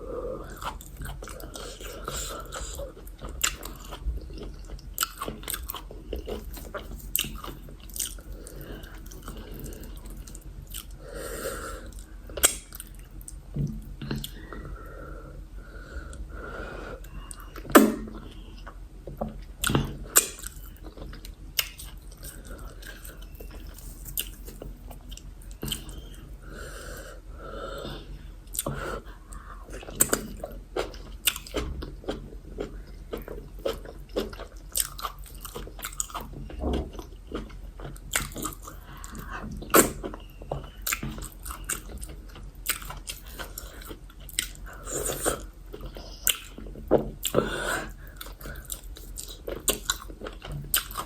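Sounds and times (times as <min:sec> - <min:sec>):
close chewing with wet mouth sounds: 0:00.4 - 0:11.1, 0:11.7 - 0:14.8, 0:17.0 - 0:26.4, 0:27.8 - 0:51.0.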